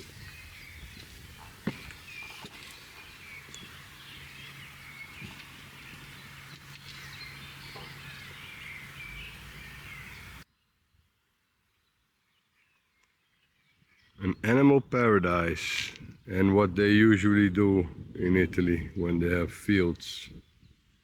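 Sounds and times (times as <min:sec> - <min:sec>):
birds chirping and singing: 0:00.0 - 0:10.4, 0:13.3 - 0:20.7
steady low hum: 0:00.6 - 0:10.4.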